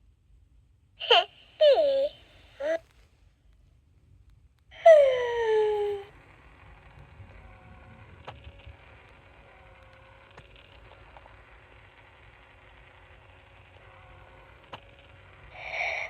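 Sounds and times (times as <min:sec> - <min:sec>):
low rumble: 0:05.0 - 0:15.7.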